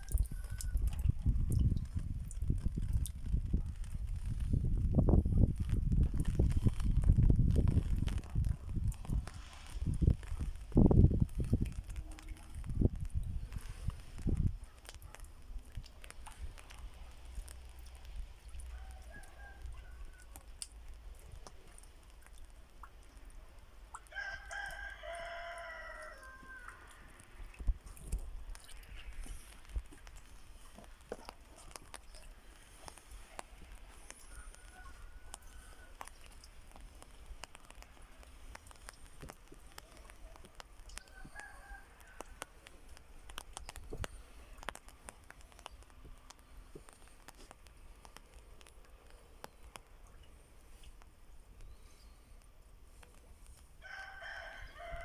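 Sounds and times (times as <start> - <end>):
rooster crowing: 24.1 - 26.9, 41.0 - 42.4, 53.8 - 55.0
light ticks: 26.6 - 53.7.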